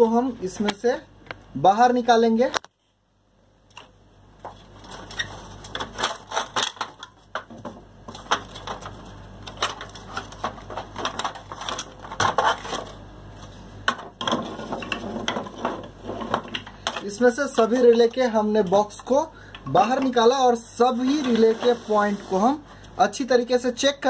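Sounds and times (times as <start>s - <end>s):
plastic parts clicking and snapping: 3.7s - 12.9s.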